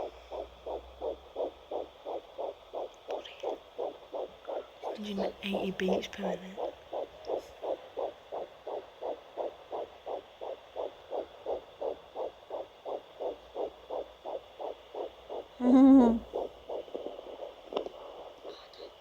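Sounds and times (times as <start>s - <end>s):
fetal heartbeat on doppler: 0.0s - 19.0s.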